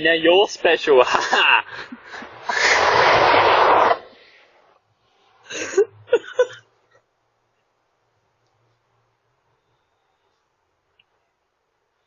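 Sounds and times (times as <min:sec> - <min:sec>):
loud noisy blast: 0:02.4 - 0:04.2.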